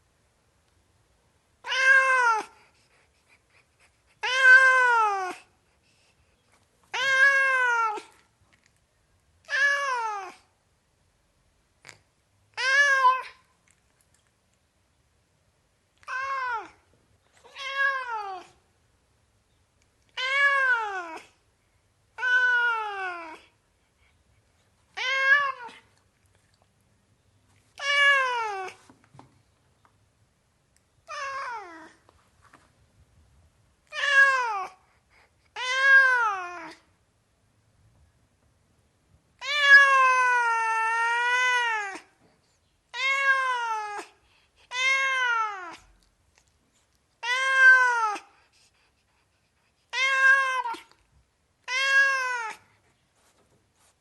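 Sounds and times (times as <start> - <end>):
cat meowing: 1.6 - 2.5, 4.2 - 5.4, 7.0 - 8.1, 9.4 - 10.4, 12.6 - 13.4, 16.0 - 16.8, 17.4 - 18.6, 20.2 - 21.3, 22.2 - 23.4, 25.0 - 25.8, 27.8 - 28.8, 31.0 - 32.0, 33.9 - 34.8, 35.6 - 36.8, 39.4 - 42.1, 42.9 - 44.1, 44.7 - 45.9, 47.2 - 48.3, 49.9 - 51.0, 51.6 - 52.6.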